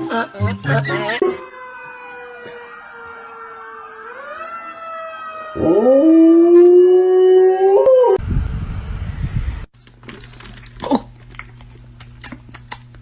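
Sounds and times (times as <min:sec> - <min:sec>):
dog howling: 0:05.6 - 0:08.2
low rumbling noise: 0:08.2 - 0:09.7.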